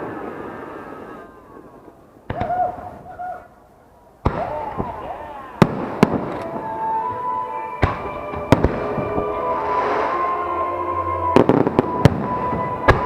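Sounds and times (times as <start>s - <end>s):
fireworks bangs: 4.2s - 13.0s.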